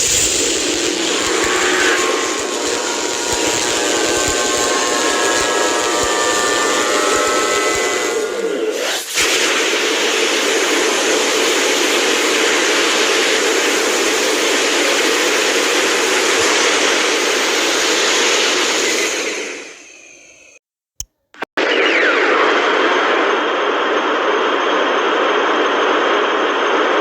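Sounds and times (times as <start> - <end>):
loud steady hissing rush: 0.0 - 19.8.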